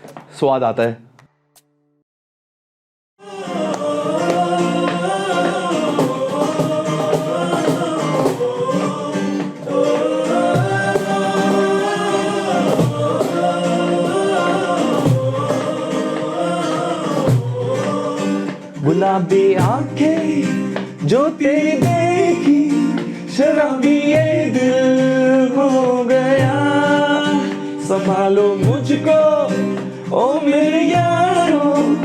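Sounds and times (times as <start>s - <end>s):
person singing melody: 3.2s - 23.0s
cajon percussion strikes: 3.6s - 32.0s.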